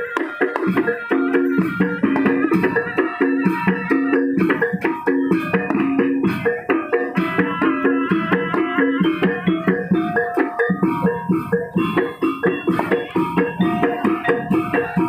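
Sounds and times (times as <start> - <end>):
drums at a fast beat: 0.0 - 15.0
gamelan music: 0.0 - 15.0.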